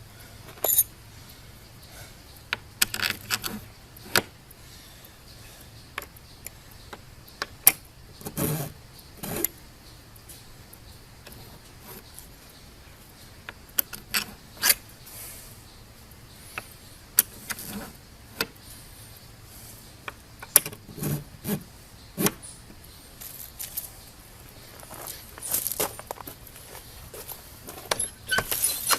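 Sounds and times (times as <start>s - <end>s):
metal bolts and washers clinking: 0.5s - 0.9s, 27.7s - 28.9s.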